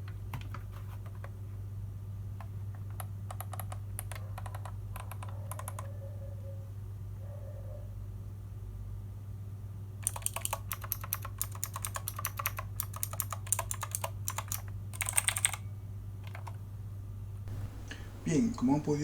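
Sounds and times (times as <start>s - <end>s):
clicky keyboard typing: 2.4s - 5.9s, 10.0s - 15.6s, 16.2s - 16.6s
steady low hum: 17.4s - 19.0s.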